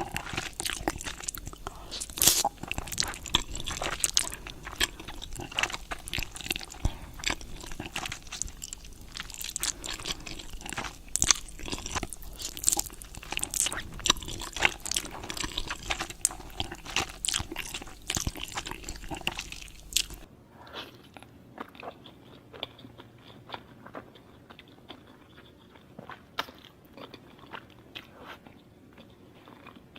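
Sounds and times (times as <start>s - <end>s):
crunchy food being chewed: 0.0s - 29.9s.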